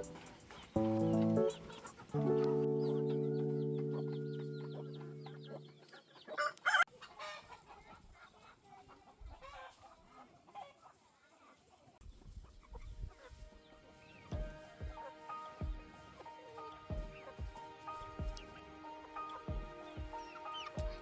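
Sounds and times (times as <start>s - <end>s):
background music note: 0.0s - 6.0s, 13.2s - 21.0s
high chirps: 0.0s - 6.0s
chickens clucking: 0.0s - 21.0s
chicken squawks: 3.9s - 11.6s.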